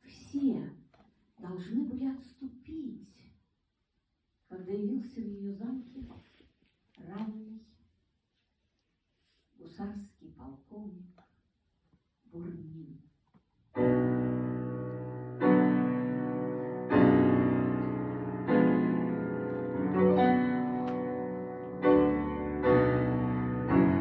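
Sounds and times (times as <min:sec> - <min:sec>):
piano playing slow chords: 0:13.8 - 0:24.0.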